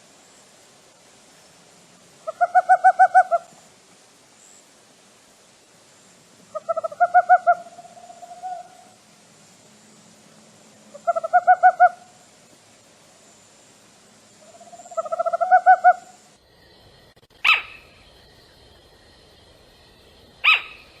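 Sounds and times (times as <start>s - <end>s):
sharp owl calls dropping in pitch: 2.2s - 3.5s, 6.5s - 9.0s, 11.0s - 12.1s, 14.4s - 16.2s, 17.4s - 17.9s, 20.4s - 21.0s
owl hooting: 2.2s - 3.6s, 6.5s - 9.0s, 10.9s - 12.2s, 14.4s - 16.2s, 17.4s - 17.9s, 20.4s - 21.0s.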